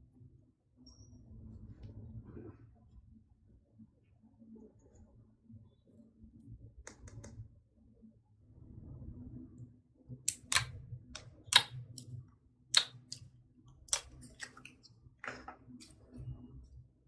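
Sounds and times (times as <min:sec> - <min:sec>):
air pops in slime: 0:10.3 - 0:10.7, 0:11.5 - 0:11.7, 0:12.8 - 0:13.2
slime squelching: 0:10.3 - 0:12.1, 0:12.7 - 0:16.0.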